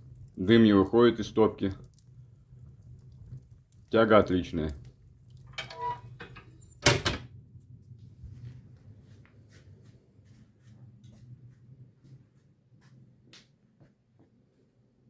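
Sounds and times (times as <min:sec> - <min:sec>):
wood fire crackling: 0:00.0 - 0:12.2
stove door shutting clunk: 0:05.6 - 0:07.3.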